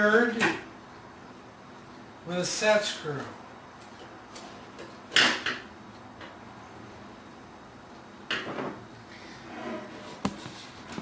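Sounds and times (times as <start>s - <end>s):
sliding scrape: 9.1s - 10.9s.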